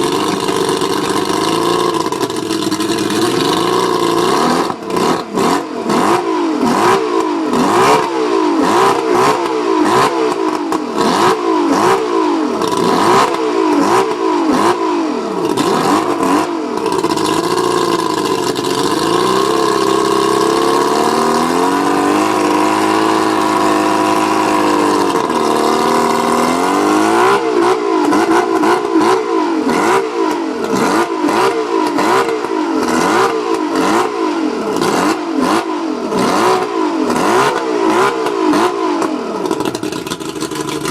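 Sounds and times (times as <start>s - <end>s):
outboard motor running rough: 0.0s - 40.9s
engine pops: 39.0s - 40.9s.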